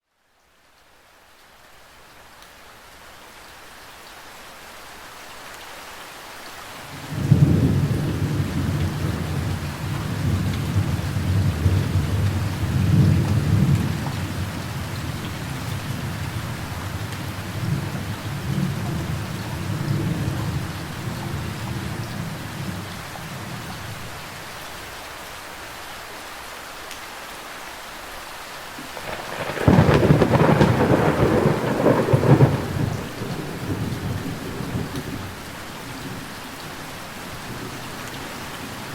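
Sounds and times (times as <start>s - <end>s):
steady rain: 0.0s - 38.9s
low thunder rumble: 7.1s - 23.6s, 29.0s - 35.4s
thunderclap: 29.0s - 35.2s.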